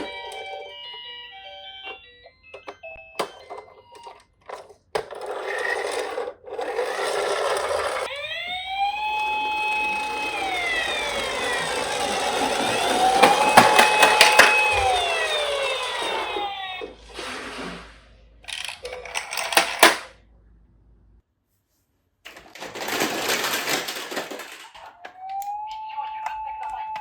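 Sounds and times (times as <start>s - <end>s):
toy electronic siren wailing: 6.9s - 17.0s, 24.8s - 27.0s.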